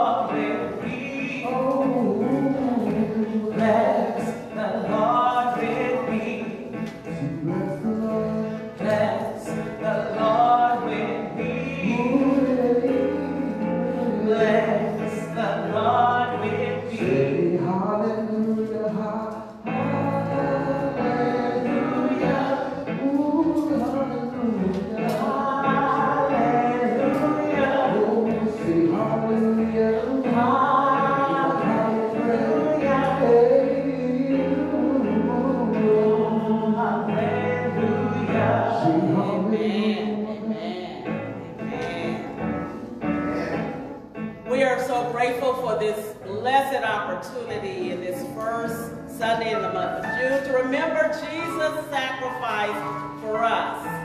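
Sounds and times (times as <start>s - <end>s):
gospel music with singing: 0.0s - 54.0s.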